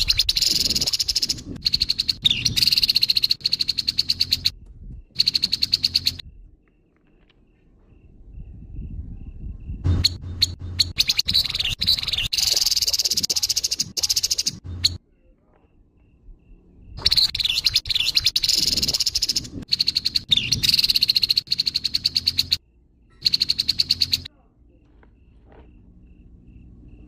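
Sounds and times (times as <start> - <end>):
bird harsh rapid chattering: 0.0 - 4.5, 5.2 - 6.2, 10.0 - 15.0, 17.0 - 22.6, 23.2 - 24.3.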